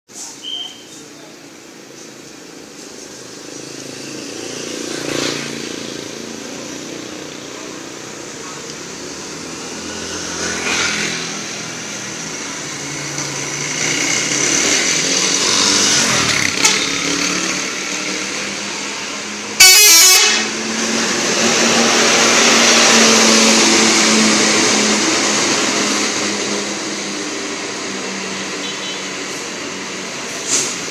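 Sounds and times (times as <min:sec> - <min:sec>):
bus engine noise: 0:00.1 - 0:30.9
multi-tone bus air horn: 0:19.6 - 0:20.7, 0:28.6 - 0:29.2
very loud horn blast: 0:19.6 - 0:20.8, 0:28.6 - 0:29.2.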